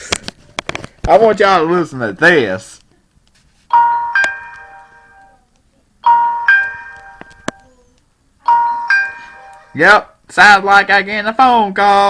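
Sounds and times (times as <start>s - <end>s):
two-note phone ringtone chime: 3.7s - 5.4s, 6.0s - 7.6s, 8.5s - 9.8s.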